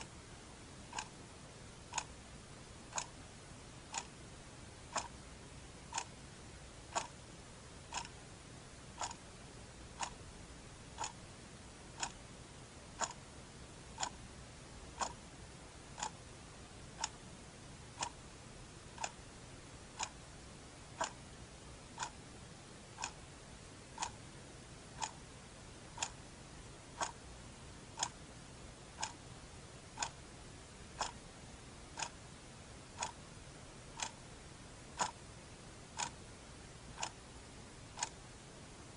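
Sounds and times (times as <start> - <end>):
clock ticking: 0.8 - 1.2, 1.8 - 2.2, 2.9 - 3.2, 3.8 - 4.2, 4.8 - 5.2, 5.8 - 6.2, 6.9 - 7.2, 7.8 - 8.2, 8.9 - 9.2, 10.0 - 10.2, 11.0 - 11.2, 11.9 - 12.2, 13.0 - 13.2, 13.9 - 14.2, 14.8 - 15.2, 15.9 - 16.2, 17.0 - 17.3, 17.9 - 18.2, 18.9 - 19.2, 19.9 - 20.2, 20.9 - 21.3, 21.9 - 22.2, 22.9 - 23.2, 23.9 - 24.2, 24.9 - 25.3, 25.9 - 26.2, 26.9 - 27.2, 28.0 - 28.2, 28.9 - 30.2, 30.8 - 31.3, 32.0 - 32.2, 32.9 - 33.3, 33.9 - 34.2, 34.9 - 35.2, 35.9 - 36.2, 36.8 - 37.2, 37.9 - 38.3.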